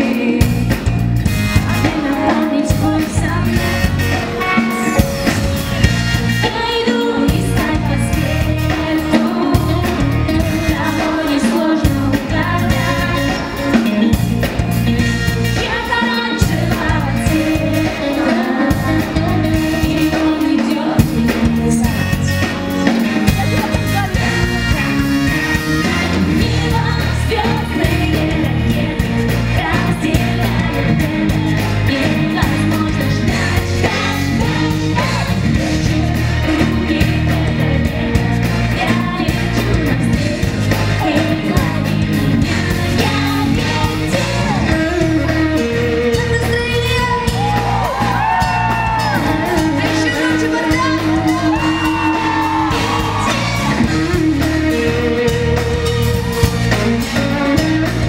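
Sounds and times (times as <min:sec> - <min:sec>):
person singing: 0:00.0 - 0:05.7, 0:06.4 - 0:58.0
live pop-rock band: 0:00.0 - 0:58.0
crowd shouting along: 0:47.3 - 0:50.2, 0:50.8 - 0:53.9.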